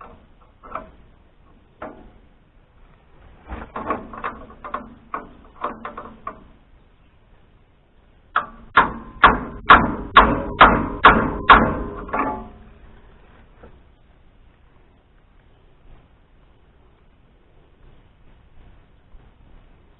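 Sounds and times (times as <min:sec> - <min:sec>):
sharp metal knocks on nut: 0:08.4 - 0:12.6.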